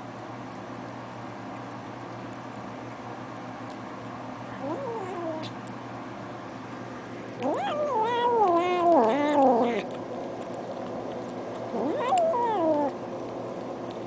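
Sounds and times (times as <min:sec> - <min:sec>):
cat yowling: 0:04.6 - 0:05.5, 0:07.4 - 0:09.9, 0:11.7 - 0:13.0
cat meowing: 0:07.4 - 0:09.9, 0:11.8 - 0:12.9.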